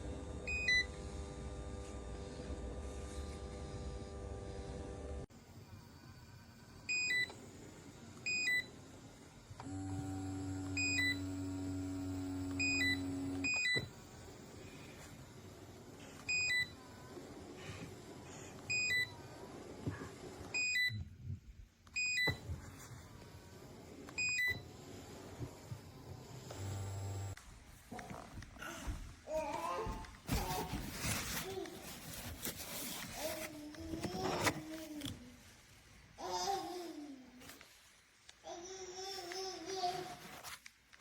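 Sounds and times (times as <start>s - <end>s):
massager motor humming: 0.0s - 5.3s, 6.6s - 20.7s, 22.5s - 29.0s.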